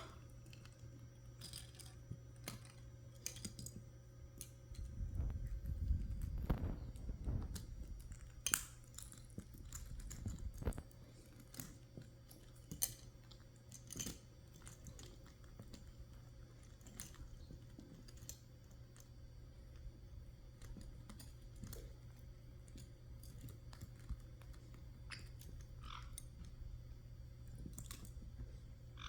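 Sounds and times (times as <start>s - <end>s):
low hum: 0.0s - 11.8s
parrot beaks crunching: 20.6s - 26.8s.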